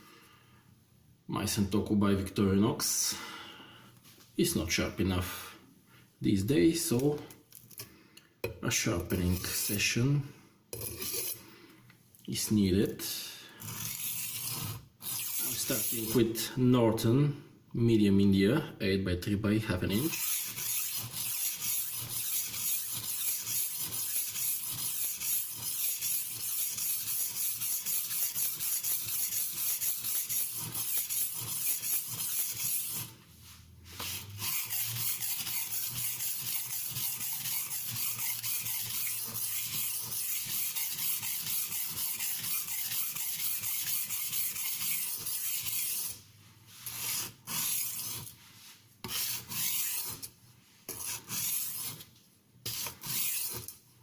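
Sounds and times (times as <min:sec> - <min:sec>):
knife blade scraping on whetstone: 0:10.7 - 0:11.4, 0:13.6 - 0:16.4, 0:20.0 - 0:46.2, 0:46.8 - 0:50.3, 0:50.9 - 0:53.8.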